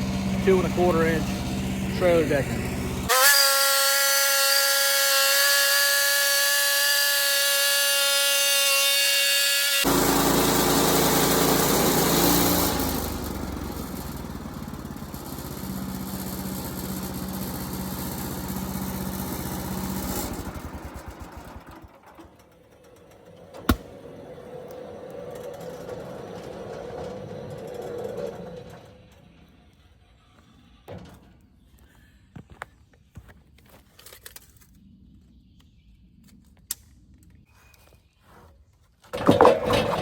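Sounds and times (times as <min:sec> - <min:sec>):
band sawmill cutting wood: 0:00.0 - 0:21.9, 0:23.5 - 0:28.7.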